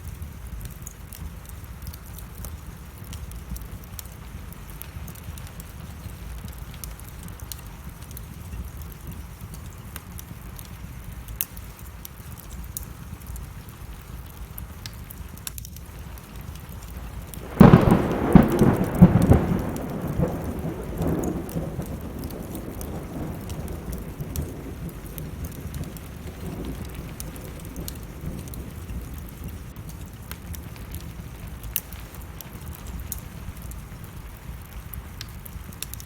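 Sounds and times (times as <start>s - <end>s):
steady rain: 0.0s - 36.0s
wood fire crackling: 0.0s - 36.0s
thunder rumbling: 16.7s - 35.8s.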